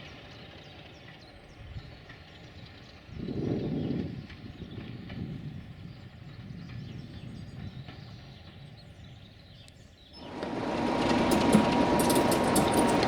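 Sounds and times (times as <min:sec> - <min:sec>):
train wheels on rails: 0:00.0 - 0:09.2, 0:10.2 - 0:13.0.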